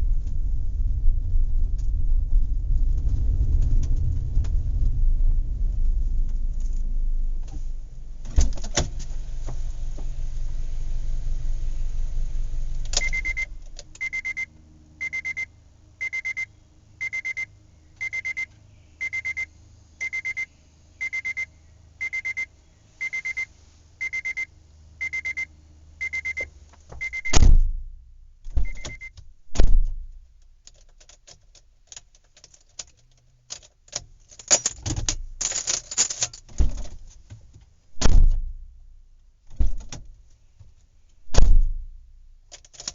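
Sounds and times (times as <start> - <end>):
heavy thumps: 0.0 - 13.8, 26.9 - 30.2, 36.5 - 38.9, 39.5 - 42.2
vehicle engine rumbling: 0.0 - 42.9
reversing alarm beeping: 13.0 - 27.4, 28.6 - 29.1.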